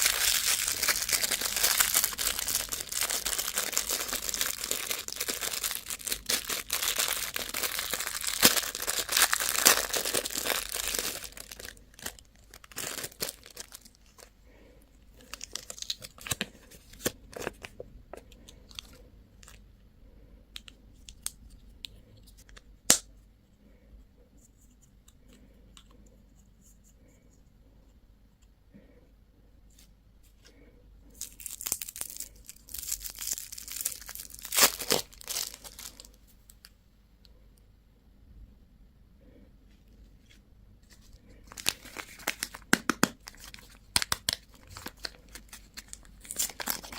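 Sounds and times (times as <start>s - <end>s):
candy wrapper crinkling: 0.0s - 14.4s, 15.2s - 19.6s, 31.1s - 36.7s, 40.8s - 46.9s.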